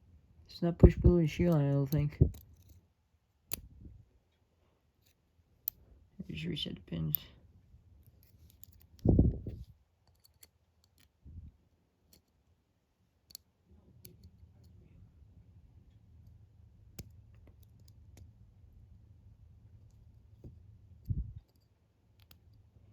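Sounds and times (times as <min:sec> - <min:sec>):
lock pick clicking in padlock: 0:08.2 - 0:09.0, 0:10.0 - 0:11.2.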